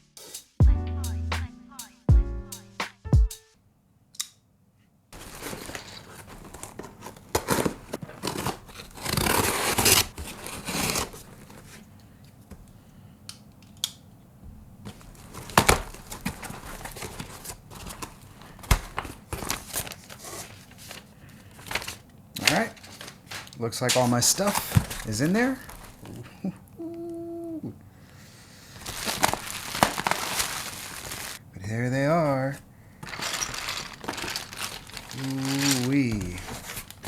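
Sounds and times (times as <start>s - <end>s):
packaging tearing and crinkling: 5.2s - 11.8s, 14.9s - 23.6s, 28.8s - 31.4s, 33.0s - 37.0s.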